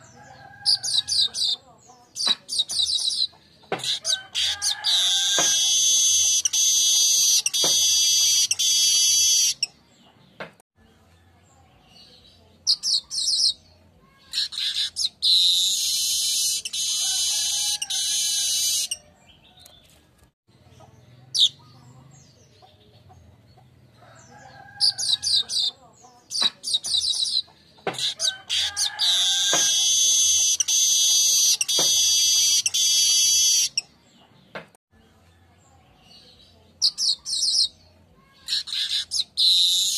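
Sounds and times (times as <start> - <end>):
bird chattering: 0.0 - 9.7, 12.6 - 13.6, 14.2 - 19.0, 20.7 - 23.7, 24.8 - 33.9, 36.8 - 39.9
bird harsh buzzing song: 2.2 - 9.8, 24.3 - 33.9.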